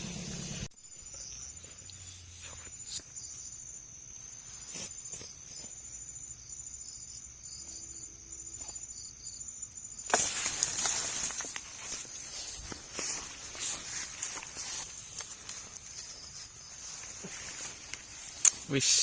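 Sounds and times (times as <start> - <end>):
insects trilling: 0.0 - 19.0
footsteps through vegetation: 10.0 - 18.8.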